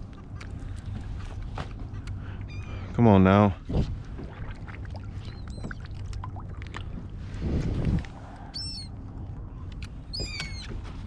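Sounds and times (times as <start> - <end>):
wind: 0.0 - 11.0
seagulls calling: 2.2 - 2.9, 8.5 - 9.0, 10.1 - 10.8.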